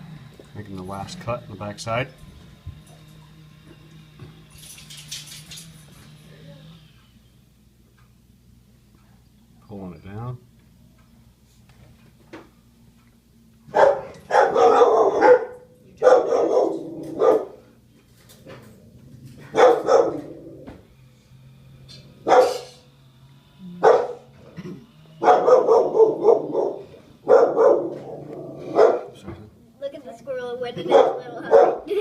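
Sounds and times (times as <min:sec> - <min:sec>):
dog barking: 0:13.7 - 0:17.7, 0:19.5 - 0:20.4, 0:22.2 - 0:22.8, 0:23.8 - 0:24.3, 0:25.2 - 0:29.2, 0:30.8 - 0:31.9.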